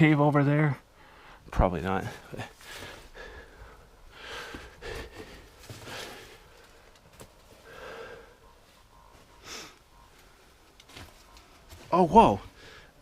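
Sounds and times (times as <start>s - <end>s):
person breathing: 0.9s - 1.5s, 2.5s - 6.9s, 7.5s - 8.6s, 9.4s - 9.8s, 12.5s - 13.0s.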